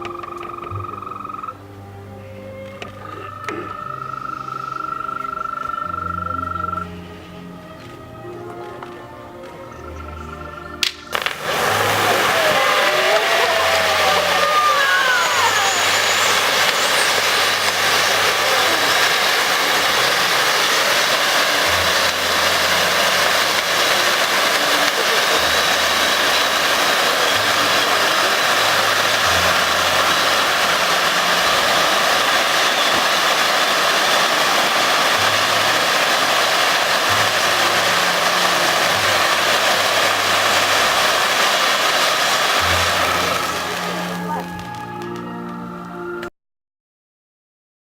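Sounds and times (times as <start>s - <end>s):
pyrotechnic fountains hissing: 0.0s - 2.2s, 10.8s - 45.5s.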